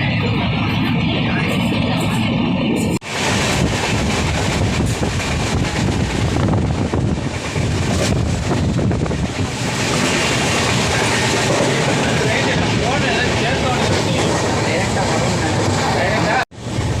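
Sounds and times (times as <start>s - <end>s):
wind rush on microphone: 0.0s - 15.8s
train rumbling at speed: 0.0s - 17.0s.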